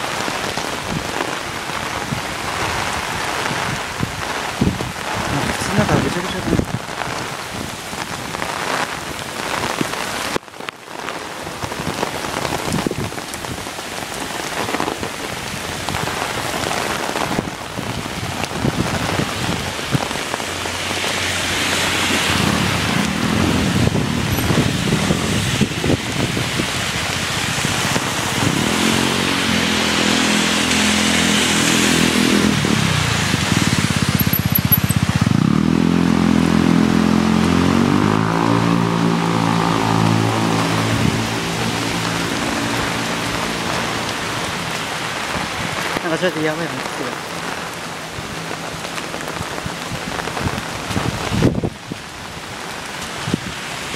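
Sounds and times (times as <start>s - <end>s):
heavy rain: 0.0s - 53.9s
wind: 0.0s - 53.9s
vehicle engine humming: 20.3s - 25.8s, 29.0s - 45.1s.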